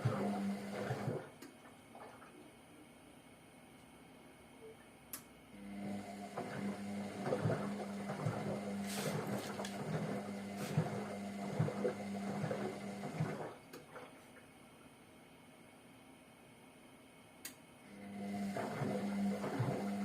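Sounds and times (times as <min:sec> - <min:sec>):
washing machine motor humming: 0:00.0 - 0:02.7, 0:05.3 - 0:14.4, 0:17.9 - 0:20.0.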